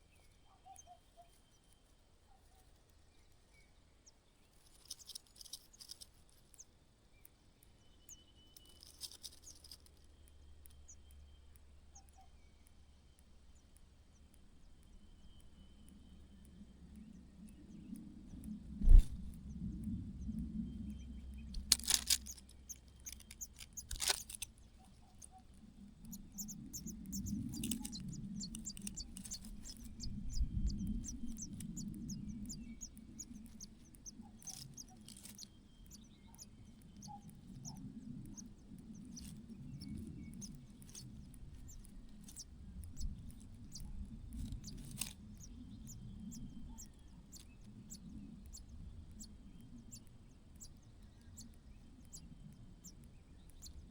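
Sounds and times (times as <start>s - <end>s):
handling rustle: 4.5s - 6.6s, 8.6s - 9.9s, 21.5s - 25.6s, 27.1s - 30.2s, 34.4s - 35.5s, 44.4s - 45.2s
high-pitched bird chirps: 26.1s - 37.8s.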